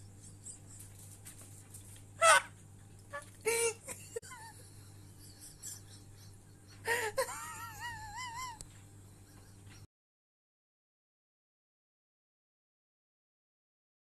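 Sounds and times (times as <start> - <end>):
animal high-pitched calls: 2.2 - 3.7.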